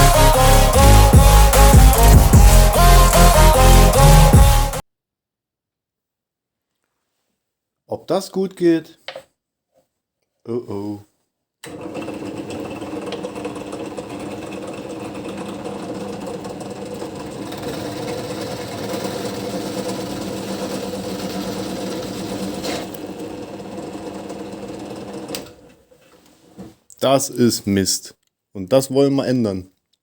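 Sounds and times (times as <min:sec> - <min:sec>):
drill press motor hum: 0:11.6 - 0:25.7.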